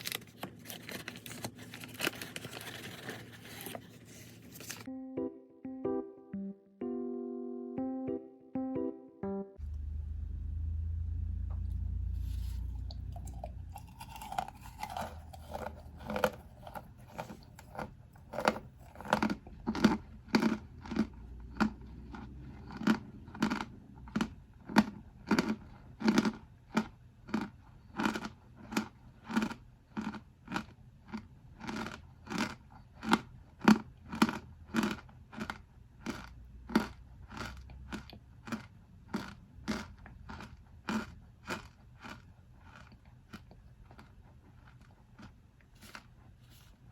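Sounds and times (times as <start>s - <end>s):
cornstarch crunching: 0.0s - 4.9s, 12.2s - 46.8s.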